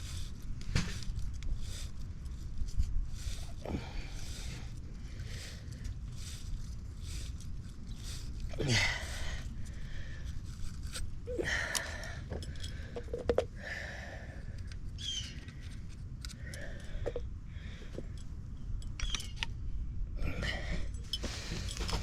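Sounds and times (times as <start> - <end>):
low steady hum: 0.0 - 22.0
metallic clinks: 11.7 - 13.4, 20.8 - 22.0.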